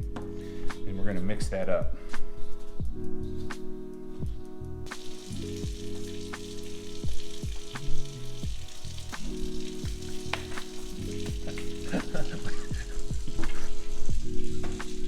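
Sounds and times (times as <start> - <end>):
background music: 0.0 - 15.0
hands mixing flour in a bowl: 4.9 - 13.7.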